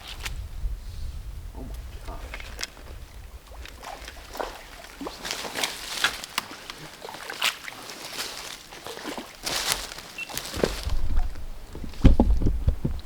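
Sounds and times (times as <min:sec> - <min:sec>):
water splashing from thrashing fish: 0:02.2 - 0:12.1.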